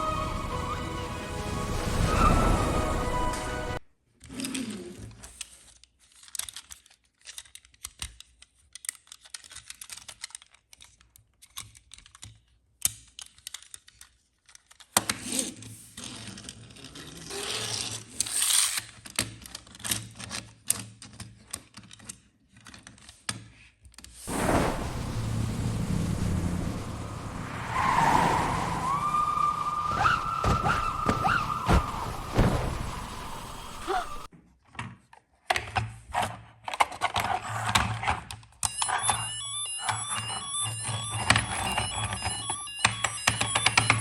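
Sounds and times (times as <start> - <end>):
low steady hum: 24.3 - 28.7.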